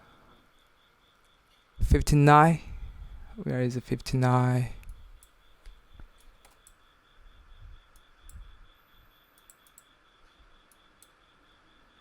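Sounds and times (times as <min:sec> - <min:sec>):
faint high whine: 0:00.0 - 0:12.0
computer mouse clicks: 0:04.8 - 0:06.8, 0:09.3 - 0:09.9.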